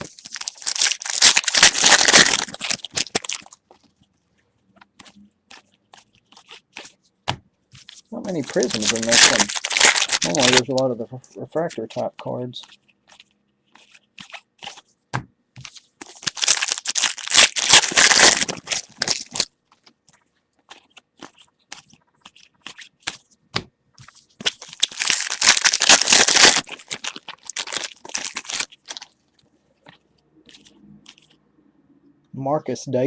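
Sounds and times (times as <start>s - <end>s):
wrappers crinkling and tearing: 0.0s - 3.9s, 7.8s - 10.9s, 15.6s - 19.5s, 24.1s - 29.2s.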